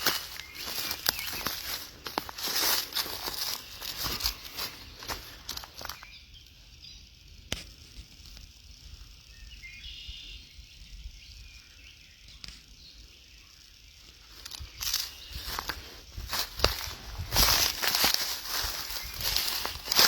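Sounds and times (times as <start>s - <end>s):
footsteps crunching on leaves: 0.0s - 6.1s, 14.3s - 20.0s
twig clicks: 0.0s - 6.5s, 14.4s - 20.0s
bird chirp: 0.0s - 7.4s, 9.0s - 20.0s
steady high hiss: 0.0s - 20.0s.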